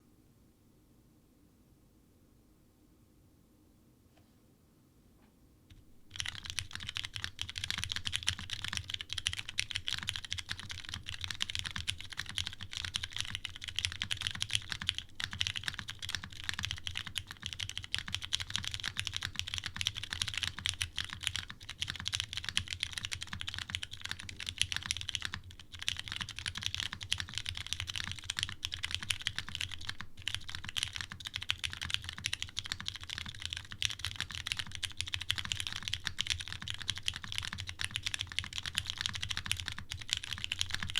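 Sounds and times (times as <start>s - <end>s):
fast mechanical keyboard typing: 6.1s - 40.9s.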